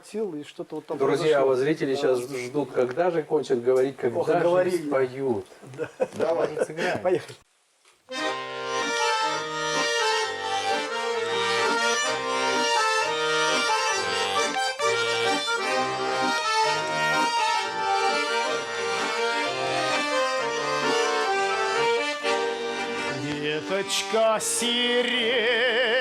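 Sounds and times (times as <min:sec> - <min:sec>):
accordion bass and chord accompaniment: 0:08.1 - 0:25.5
button accordion melody: 0:08.1 - 0:25.5.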